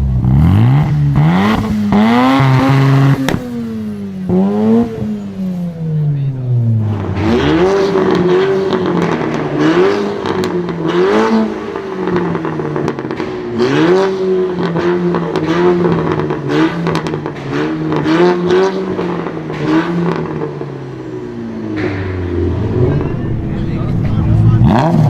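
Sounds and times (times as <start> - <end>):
car engine revving: 0.0 - 25.0
exhaust crackles and pops: 6.2 - 20.9.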